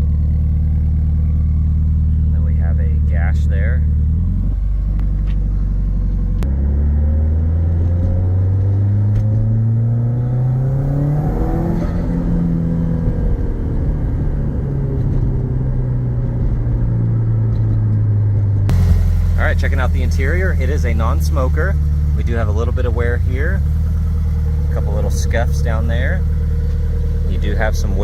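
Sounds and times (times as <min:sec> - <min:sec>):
car engine idling: 0:00.0 - 0:06.6, 0:18.7 - 0:28.0.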